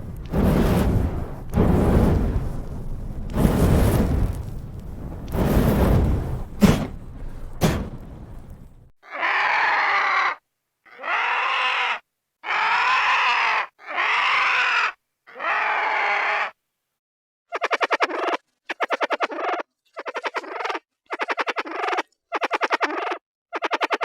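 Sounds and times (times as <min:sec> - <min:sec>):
low rumble: 0:00.0 - 0:08.9
sharp cracks: 0:00.0 - 0:08.9
creature screeching: 0:09.0 - 0:16.6.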